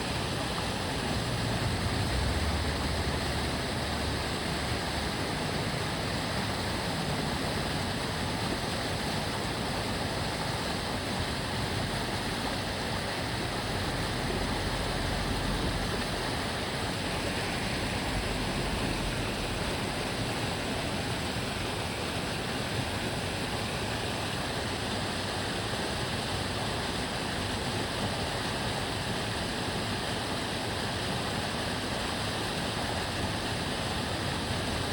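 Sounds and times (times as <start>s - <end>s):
road traffic rumble: 0.0s - 22.8s
stream babbling: 0.0s - 34.9s.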